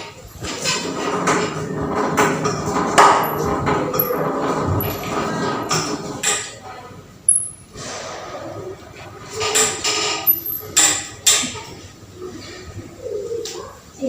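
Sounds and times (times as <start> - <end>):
sharp knocks and clicks: 1.2 - 6.5.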